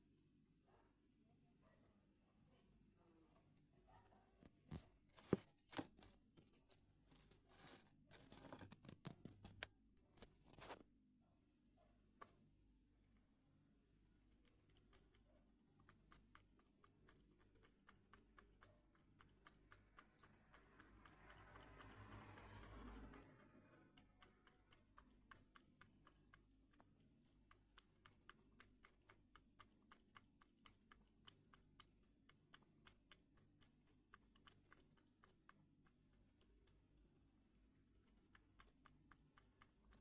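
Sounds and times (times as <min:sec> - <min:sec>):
cat lapping milk: 0:14.2 - 0:40.0.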